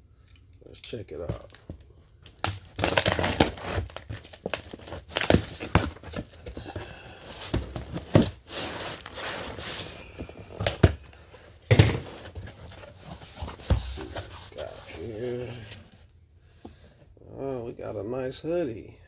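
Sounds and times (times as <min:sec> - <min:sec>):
packaging tearing and crinkling: 0:01.4 - 0:11.1.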